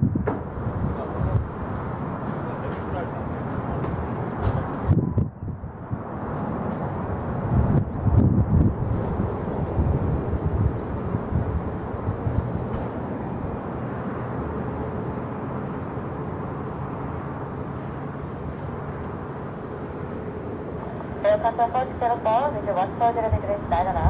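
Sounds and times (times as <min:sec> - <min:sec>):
jet engines rumbling: 0:00.0 - 0:24.0.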